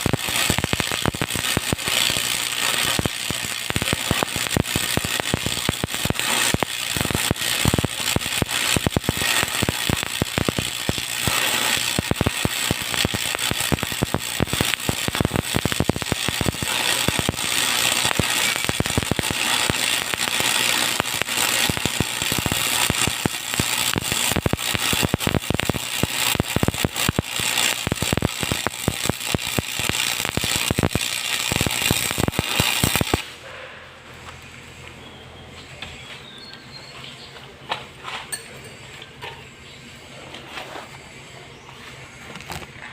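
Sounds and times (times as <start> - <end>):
welding arc crackling: 0.0 - 33.4.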